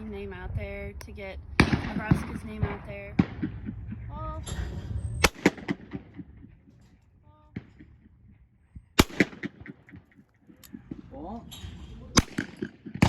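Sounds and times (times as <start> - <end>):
loud shotgun shots: 5.2 - 6.3, 9.0 - 10.0, 12.2 - 13.0
fainter distant shots: 5.2 - 6.7, 9.0 - 11.1, 12.1 - 13.0.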